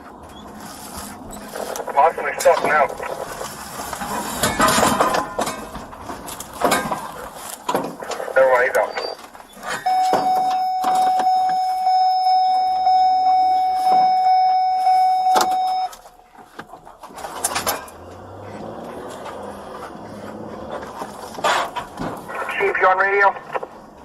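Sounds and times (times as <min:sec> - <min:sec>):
engine humming: 0:00.0 - 0:24.0
knocks and clunks: 0:01.3 - 0:11.7, 0:15.2 - 0:22.6
steady electronic beep: 0:09.8 - 0:16.3.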